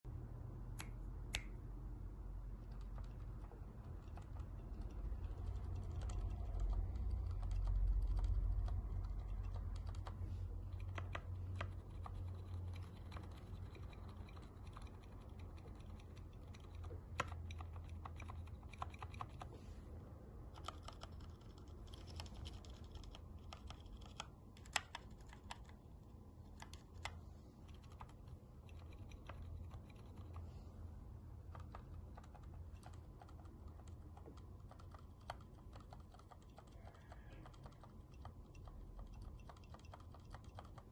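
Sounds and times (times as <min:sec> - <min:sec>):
mechanical keyboard key presses: 0:02.7 - 0:19.5.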